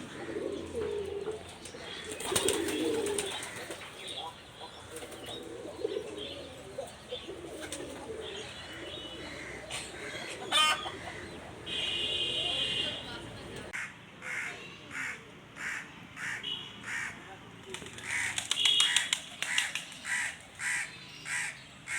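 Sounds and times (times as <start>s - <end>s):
pigeons cooing: 0.0s - 12.6s.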